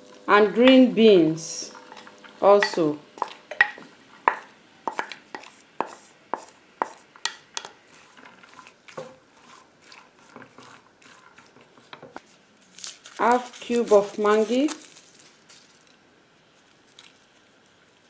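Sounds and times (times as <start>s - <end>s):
spoon knocking on cooking pot: 2.6s - 6.0s.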